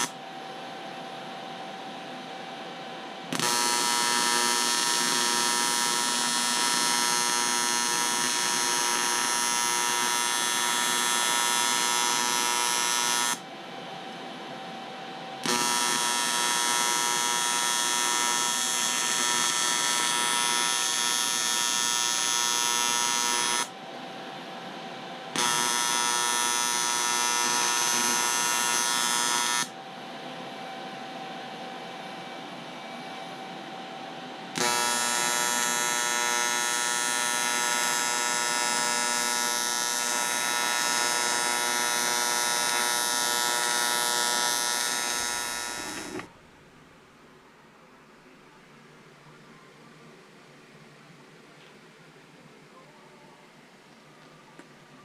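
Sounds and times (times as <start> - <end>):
electric tool buzzing: 3.3 - 13.4, 15.4 - 23.8, 25.3 - 29.8, 34.5 - 46.4
quiet hum: 44.9 - 55.0.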